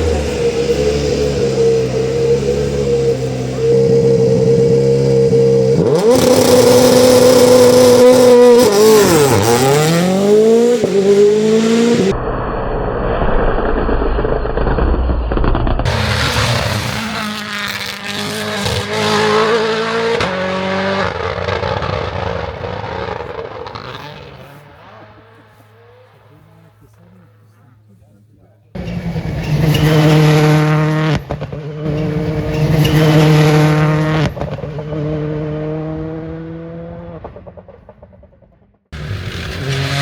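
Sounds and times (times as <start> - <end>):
rally car engines revving: 0.0 - 38.3, 39.0 - 40.0
dull rumble: 11.9 - 17.2.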